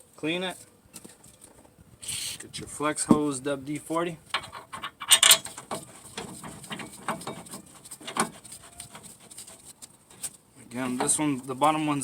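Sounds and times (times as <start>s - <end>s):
tools and bolts knocking on metal: 4.3s - 9.6s.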